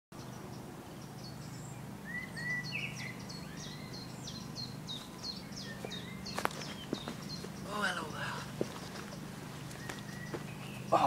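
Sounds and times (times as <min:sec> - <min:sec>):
birds chirping: 0:00.2 - 0:11.0
steady low hum: 0:00.2 - 0:11.0
rising bird whistles: 0:02.0 - 0:04.4.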